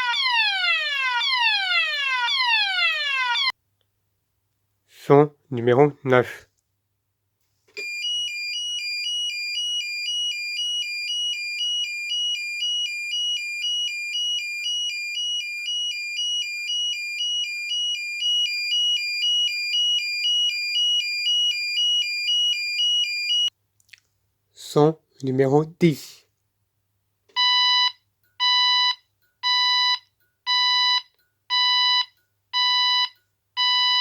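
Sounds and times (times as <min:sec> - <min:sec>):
fire alarm two-tone signal: 0:00.0 - 0:03.5, 0:07.8 - 0:23.5, 0:27.4 - 0:34.0.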